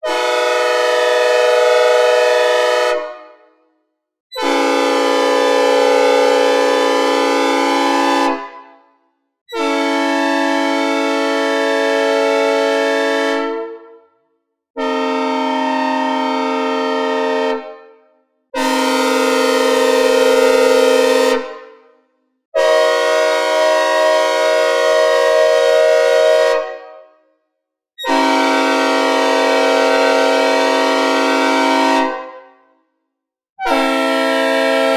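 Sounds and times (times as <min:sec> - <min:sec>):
synthesized air horn chords: 0:00.0 - 0:03.4, 0:04.4 - 0:08.5, 0:09.5 - 0:13.9, 0:14.8 - 0:17.7, 0:18.6 - 0:21.6, 0:22.6 - 0:26.9, 0:28.0 - 0:32.3, 0:33.6 - 0:34.9.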